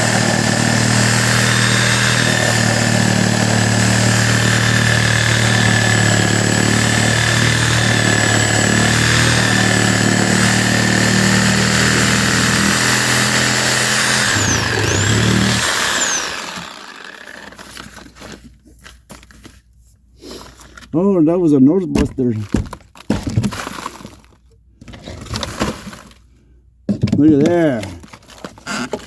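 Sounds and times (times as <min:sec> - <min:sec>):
machine motor whining: 0:00.0 - 0:17.6.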